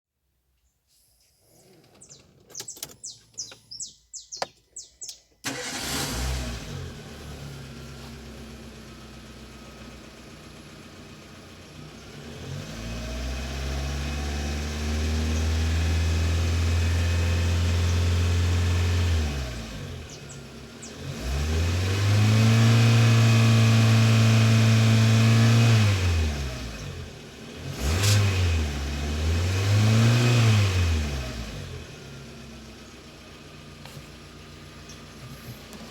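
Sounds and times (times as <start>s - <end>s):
bird chirps: 0.6s - 5.4s, 20.1s - 21.1s
car engine starting and revving: 5.4s - 35.9s.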